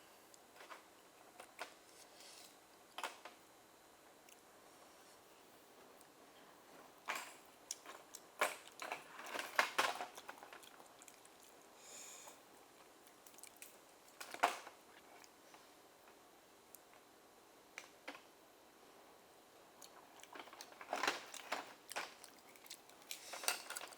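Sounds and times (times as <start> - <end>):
chewing and biting with clicks: 7.0 - 11.7, 12.7 - 14.3, 19.8 - 23.9.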